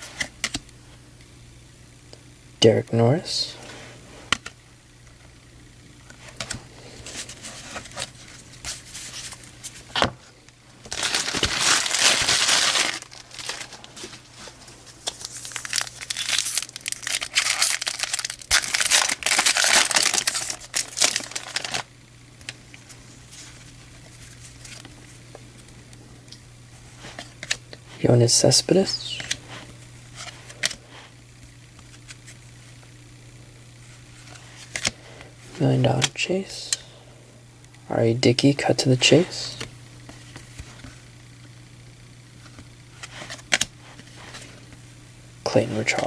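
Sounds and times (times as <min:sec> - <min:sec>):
foil wrappers crinkling and tearing: 0:10.8 - 0:21.9, 0:22.5 - 0:25.2, 0:34.1 - 0:35.0, 0:42.4 - 0:44.8.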